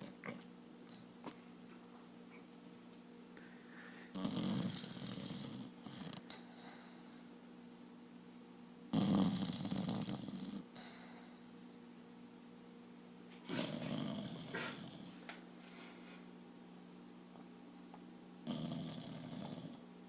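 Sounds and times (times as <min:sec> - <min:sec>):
dog snoring: 0:04.1 - 0:07.2, 0:08.9 - 0:11.5, 0:13.4 - 0:15.3, 0:18.4 - 0:19.9.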